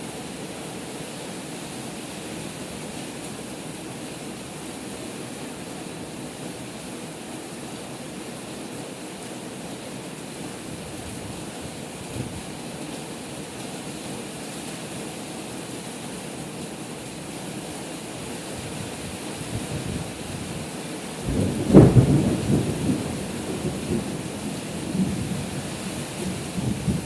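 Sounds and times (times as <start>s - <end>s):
heavy rain: 0.0s - 27.0s
thunderclap rumbling: 21.2s - 27.0s.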